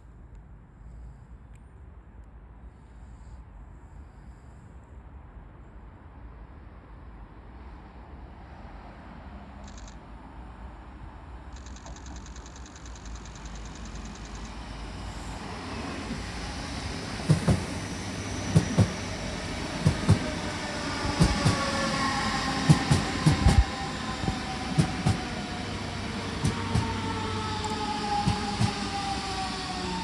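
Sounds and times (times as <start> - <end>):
train wheels thumping over rail joints: 17.2 - 17.8, 18.5 - 19.0, 19.8 - 20.4, 21.0 - 21.8, 22.5 - 25.4, 26.4 - 27.1, 28.2 - 29.0
train whine falling in pitch: 19.9 - 30.0.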